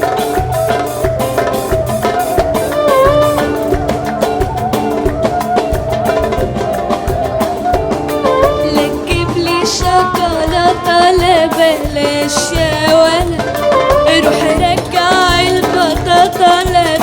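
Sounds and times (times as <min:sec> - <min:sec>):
instrumental pop music: 0:00.0 - 0:17.0.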